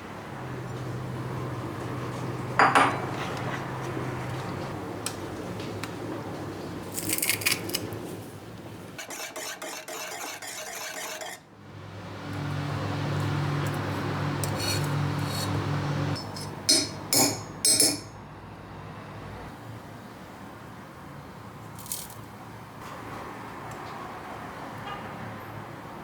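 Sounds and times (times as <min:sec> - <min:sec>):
dishes clinking: 0:02.5 - 0:03.9, 0:16.2 - 0:18.2.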